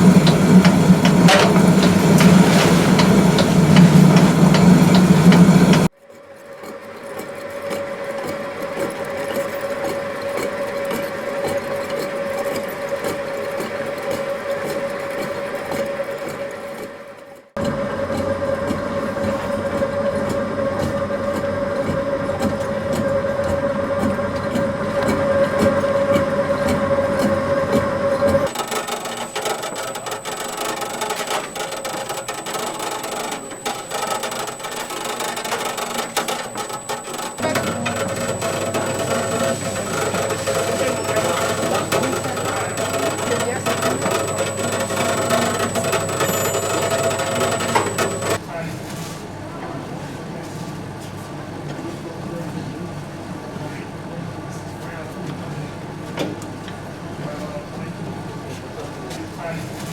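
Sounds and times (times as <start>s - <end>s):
machine with thin high tone: 0.0s - 5.9s, 24.8s - 48.4s
mill machinery humming and rattling: 0.0s - 5.9s, 7.2s - 48.4s
rapid clicking: 0.0s - 5.9s, 28.4s - 48.4s.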